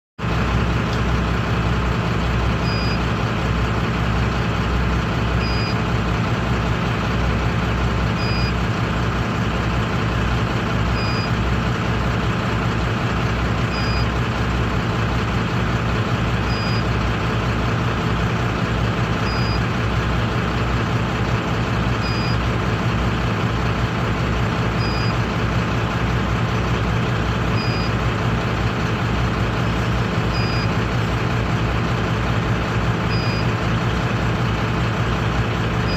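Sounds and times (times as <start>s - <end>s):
tractor engine running: 0.2s - 35.9s
short high beep: 2.6s - 3.0s, 5.4s - 5.8s, 8.2s - 8.6s, 11.0s - 11.3s, 13.7s - 14.1s, 16.5s - 16.8s, 19.2s - 19.6s, 22.0s - 22.4s, 24.8s - 25.2s, 30.4s - 30.7s, 33.1s - 33.5s.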